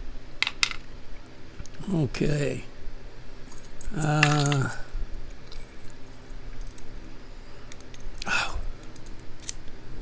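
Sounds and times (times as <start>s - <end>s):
short vocal sound: 3.9s - 4.9s
metallic clicks of lock parts: 7.7s - 9.8s.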